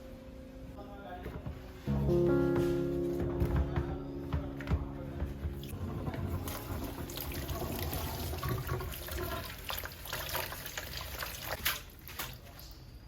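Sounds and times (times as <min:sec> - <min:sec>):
running water: 0:05.6 - 0:12.9.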